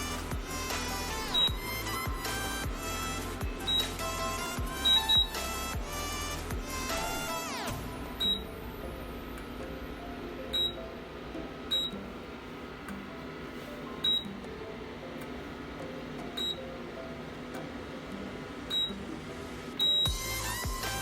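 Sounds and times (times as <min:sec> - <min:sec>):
faint steady hum: 0:00.0 - 0:21.0
short high beeps: 0:03.6 - 0:04.0, 0:04.7 - 0:05.5, 0:08.2 - 0:08.5.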